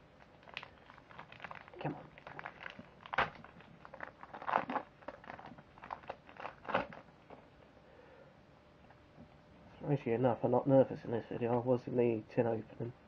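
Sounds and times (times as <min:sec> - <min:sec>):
foil wrapper crinkling: 0:00.2 - 0:07.1.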